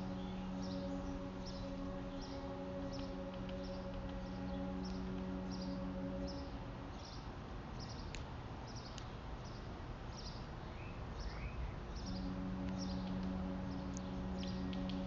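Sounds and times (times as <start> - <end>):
deep air horn blast: 0.0 - 7.6, 11.9 - 15.0
birds chirping: 0.0 - 15.0.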